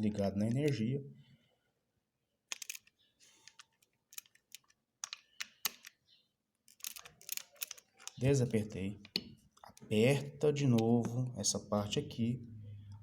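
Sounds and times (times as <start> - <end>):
screwdriver clicks and scrapes: 2.5 - 6.0, 6.7 - 8.2.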